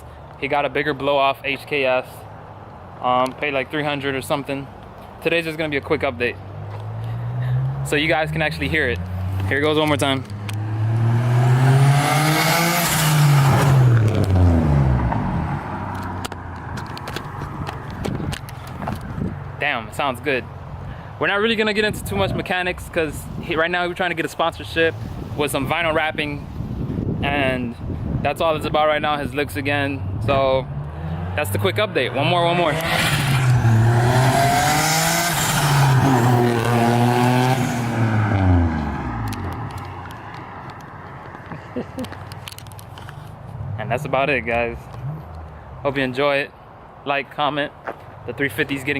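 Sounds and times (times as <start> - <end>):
car engine revving: 6.7 - 16.2, 30.6 - 39.9.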